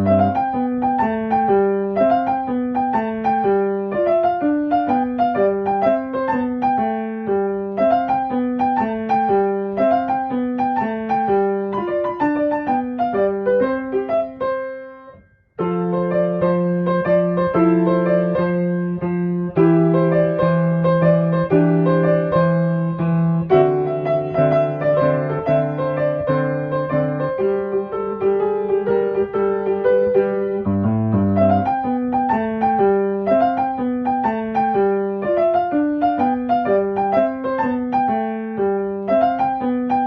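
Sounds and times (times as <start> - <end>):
piano music: 0.0 - 40.0.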